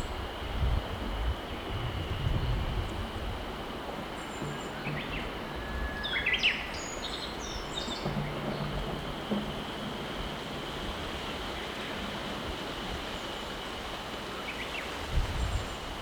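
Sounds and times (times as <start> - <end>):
river rushing: 3.1 - 16.0.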